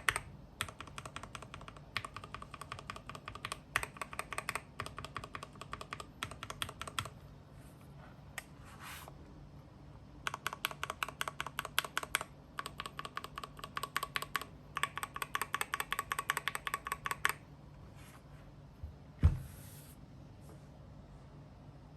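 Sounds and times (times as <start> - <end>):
mechanical keyboard typing: 0.0 - 7.2, 10.2 - 17.4
loud thump: 19.2 - 19.5.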